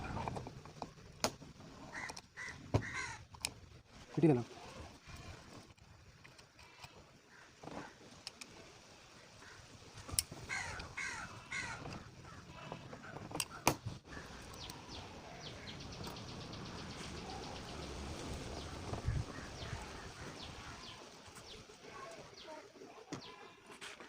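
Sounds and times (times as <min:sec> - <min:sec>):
steady background noise: 0:00.0 - 0:24.0
harsh bird calls: 0:01.8 - 0:03.3, 0:09.2 - 0:23.6.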